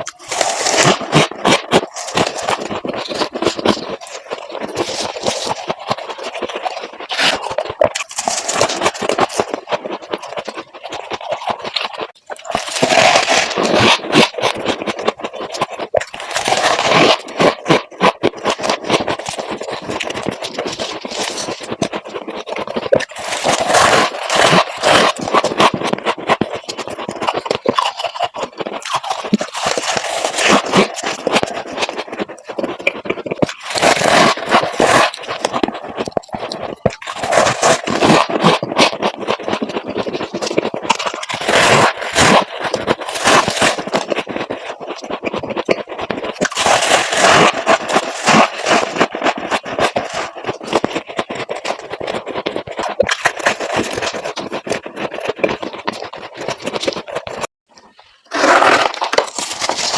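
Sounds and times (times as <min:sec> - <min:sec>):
ice being scraped and crunched: 0:00.0 - 0:57.5, 0:58.2 - 0:59.9.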